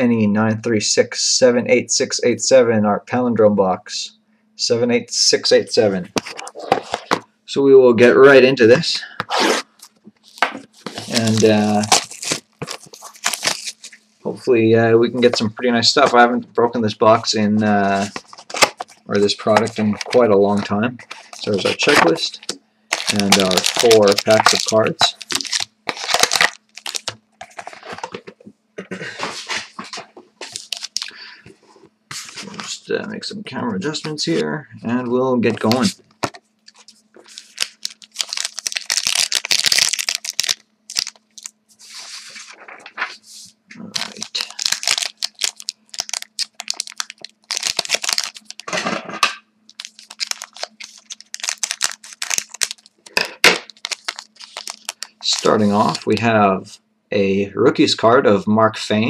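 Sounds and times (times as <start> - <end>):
cardboard and wrappers rustling: 6.1 - 7.2, 9.7 - 14.1, 17.6 - 31.1, 35.5 - 49.0, 49.7 - 56.3.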